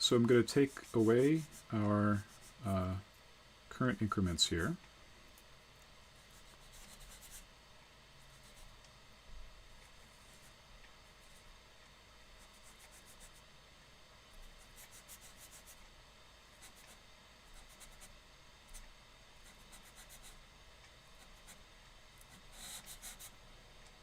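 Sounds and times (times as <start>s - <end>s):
scratchy writing strokes: 0.2s - 2.7s, 6.1s - 7.5s, 12.4s - 13.5s, 14.4s - 15.8s, 16.6s - 18.8s, 19.4s - 20.4s, 22.2s - 23.4s.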